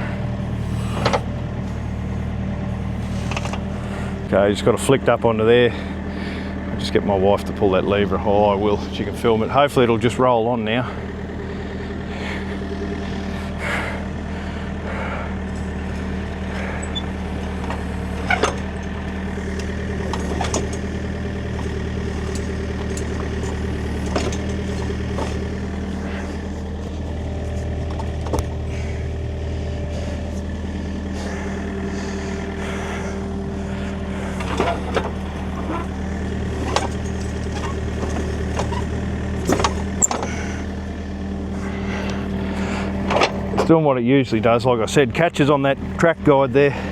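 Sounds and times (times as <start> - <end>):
excavator diesel engine running: 0.0 - 46.9
metallic clanks of track links: 16.8 - 26.2, 36.5 - 38.8.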